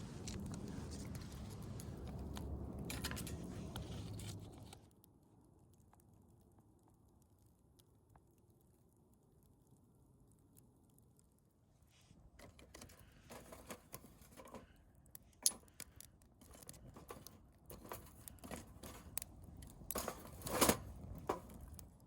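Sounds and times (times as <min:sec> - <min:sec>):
rustling and scraping: 0:00.0 - 0:04.9, 0:11.9 - 0:22.0
small objects clicking and knocking: 0:12.3 - 0:22.0.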